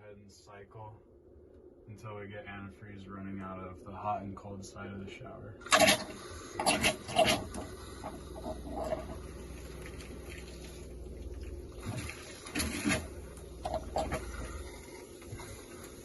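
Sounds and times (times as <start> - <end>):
water pump humming: 5.6 - 16.0.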